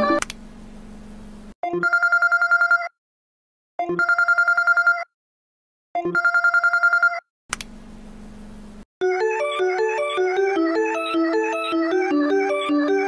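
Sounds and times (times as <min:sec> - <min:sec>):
electronic phone ringtone trill: 0:01.6 - 0:03.0, 0:03.8 - 0:05.1, 0:06.0 - 0:07.2, 0:09.0 - 0:13.0.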